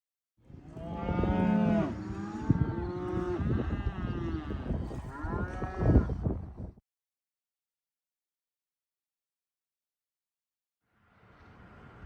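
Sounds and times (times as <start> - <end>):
cattle mooing: 0.7 - 6.1.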